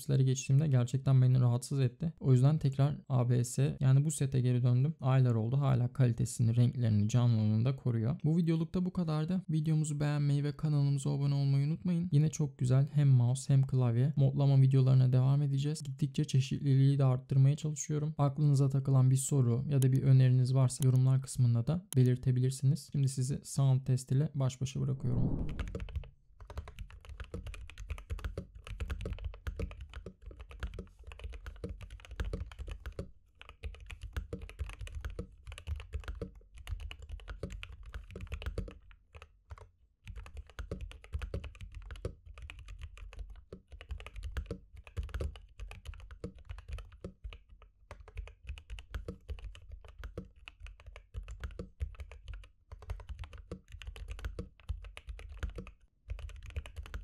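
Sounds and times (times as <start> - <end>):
mechanical keyboard typing: 25.5 - 57.0.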